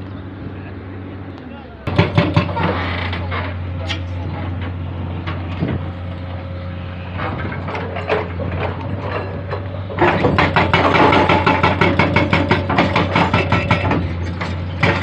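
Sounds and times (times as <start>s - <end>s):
excavator diesel engine running: 0.0s - 15.0s
scattered knocks: 1.9s - 5.9s, 7.1s - 15.0s
hydraulic breaker hammering rock: 1.9s - 6.0s, 7.0s - 15.0s.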